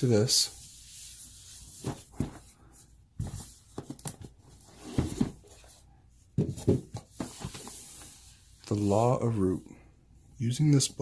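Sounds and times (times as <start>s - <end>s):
paper and cardboard rustling: 1.1s - 5.8s.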